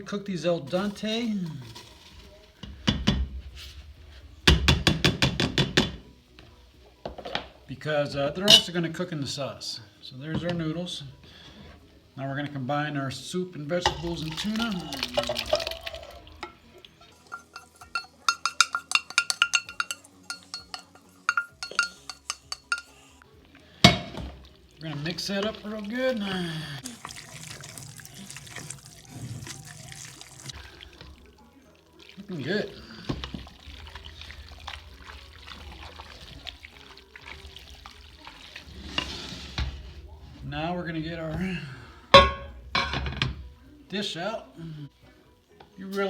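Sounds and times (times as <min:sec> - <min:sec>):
metal spoon clinking on cookware: 0:08.5 - 0:08.8, 0:13.8 - 0:23.1, 0:42.1 - 0:43.4
wet squelching of stirred food: 0:13.8 - 0:42.1.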